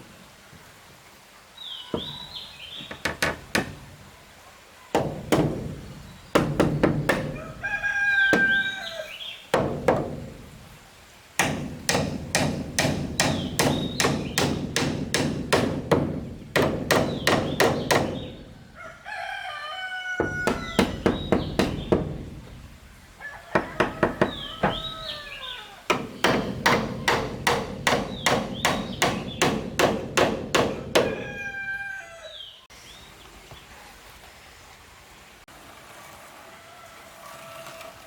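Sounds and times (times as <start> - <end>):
tool knocking on wood: 2.8 - 3.9, 5.0 - 7.6, 8.3 - 8.8, 9.5 - 10.6, 11.4 - 18.4, 20.2 - 22.7, 23.5 - 25.2, 25.9 - 31.5
rooster crowing: 7.2 - 9.2, 18.6 - 21.3, 23.2 - 25.9, 31.0 - 32.6, 36.4 - 38.0.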